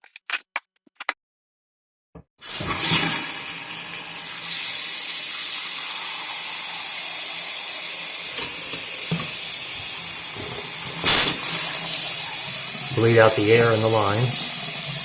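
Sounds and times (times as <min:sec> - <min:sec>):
faucet running into sink: 0:02.5 - 0:15.0.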